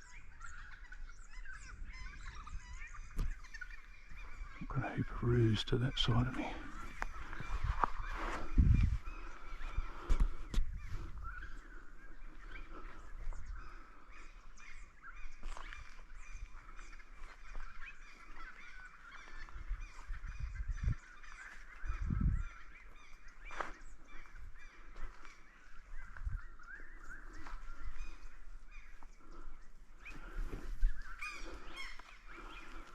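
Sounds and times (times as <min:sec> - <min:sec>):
flock of birds honking: 0:00.0 - 0:25.9, 0:27.4 - 0:32.9.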